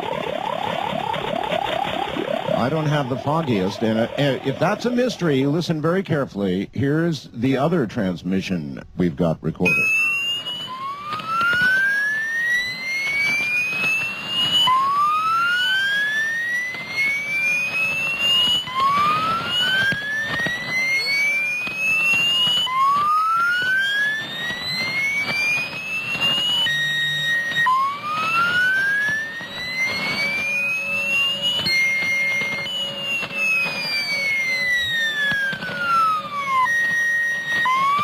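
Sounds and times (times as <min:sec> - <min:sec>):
rising whistling radio tone: 0:00.0 - 0:06.6, 0:09.6 - 0:38.0
crackling radio static: 0:00.0 - 0:38.0
faint falling whistle sweeps: 0:09.7 - 0:38.0.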